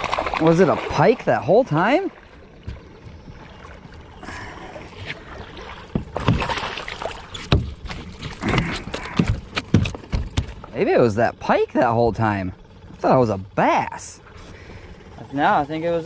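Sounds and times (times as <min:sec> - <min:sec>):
knocks and bumps on a kayak: 0:02.6 - 0:03.4, 0:05.9 - 0:10.7.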